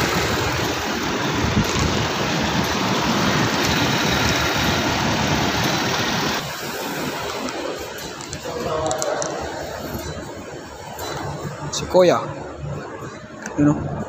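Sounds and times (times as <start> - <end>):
car engine idling: 0.0 - 8.4.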